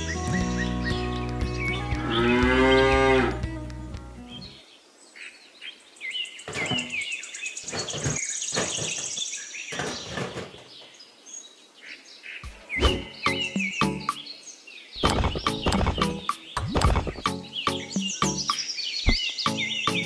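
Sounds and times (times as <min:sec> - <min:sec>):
small birds chirping: 0:00.0 - 0:20.0
dull knocks: 0:06.5 - 0:07.0, 0:07.7 - 0:10.9
high bird trill: 0:12.4 - 0:14.4.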